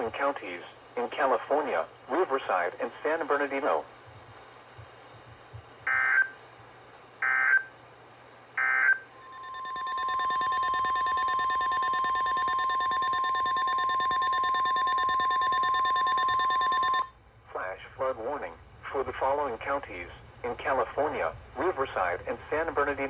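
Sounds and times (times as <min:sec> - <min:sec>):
steady alert tone: 0:09.2 - 0:17.1
warbling data bursts: 0:09.2 - 0:17.1.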